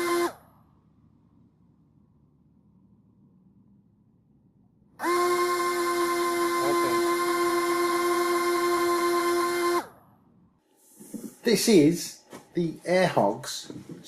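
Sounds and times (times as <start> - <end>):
toy propeller motors whining: 0.0 - 0.4, 5.0 - 9.9.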